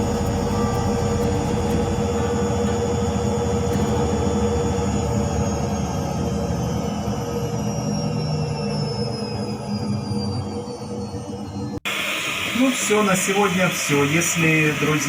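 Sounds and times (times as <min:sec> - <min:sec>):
faint high whine falling in pitch: 0:00.0 - 0:15.0
washing machine humming and whining: 0:00.0 - 0:15.0.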